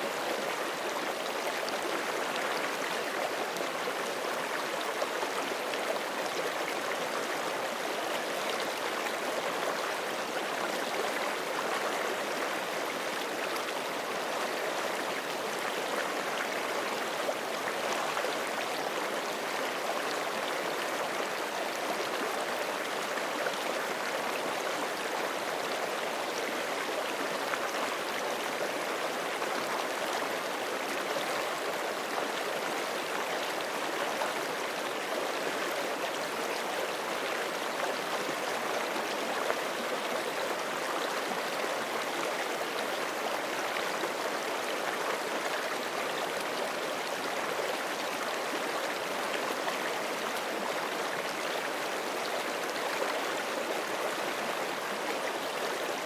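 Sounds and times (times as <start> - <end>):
creek flowing over rocks: 0.0 - 56.0.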